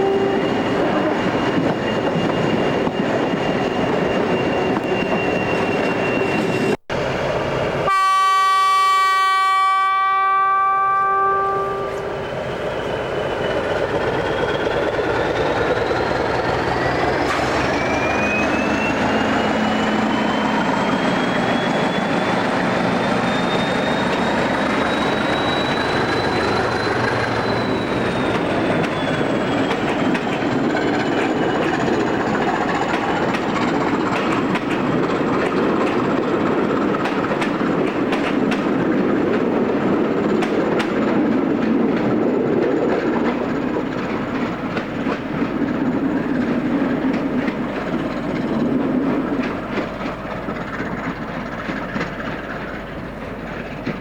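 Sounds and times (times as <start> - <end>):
train running on rails: 0.0 - 54.0
wheels clicking over track: 23.3 - 54.0.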